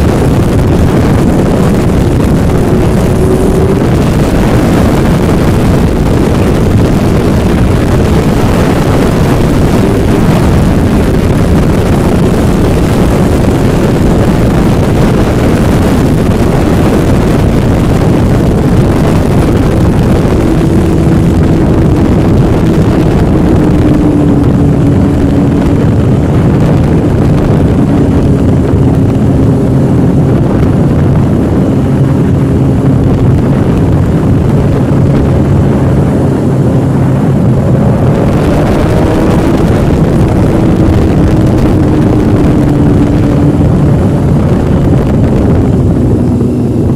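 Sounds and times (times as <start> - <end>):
boat engine running: 0.0 - 46.9
heavy rushing noise: 0.0 - 46.9.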